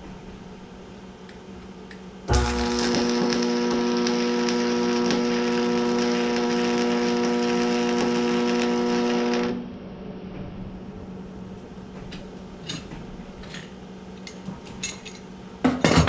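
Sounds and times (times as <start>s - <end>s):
arc welder buzzing and crackling: 2.3s - 9.8s.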